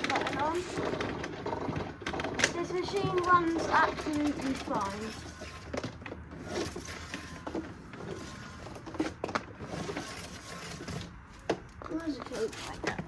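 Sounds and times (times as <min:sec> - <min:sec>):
plastic parts clicking and knocking: 0:00.0 - 0:10.1.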